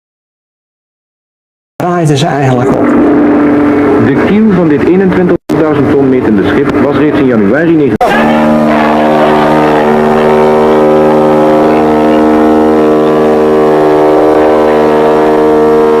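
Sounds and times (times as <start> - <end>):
ship's horn blast: 8.0 - 16.0.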